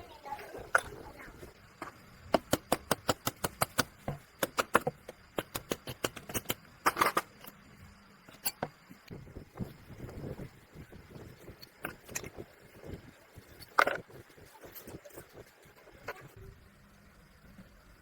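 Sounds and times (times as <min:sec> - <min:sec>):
metallic clicks of hand tools: 0:02.3 - 0:07.5.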